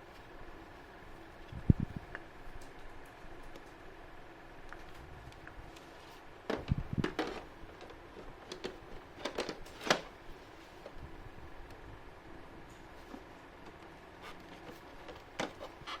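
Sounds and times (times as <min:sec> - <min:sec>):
faint background hum: 0:00.0 - 0:16.0
sharp handling clicks and knocks: 0:06.5 - 0:10.1, 0:12.7 - 0:16.0.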